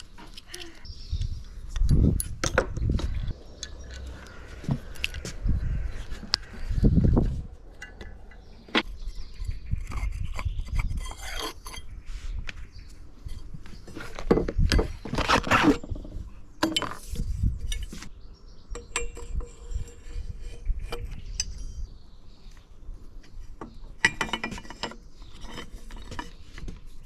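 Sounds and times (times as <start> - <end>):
metal scraping: 2.0 - 12.4.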